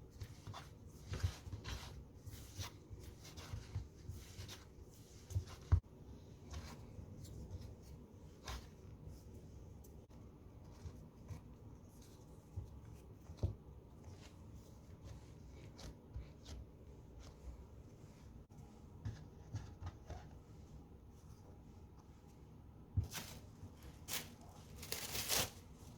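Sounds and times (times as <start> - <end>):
food preparation handling sounds: 21.1 - 25.9.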